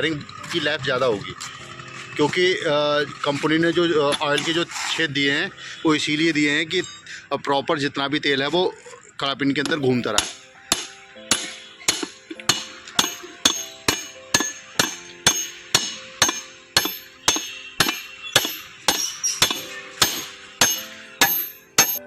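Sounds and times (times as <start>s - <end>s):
hammer striking metal: 10.2s - 22.0s.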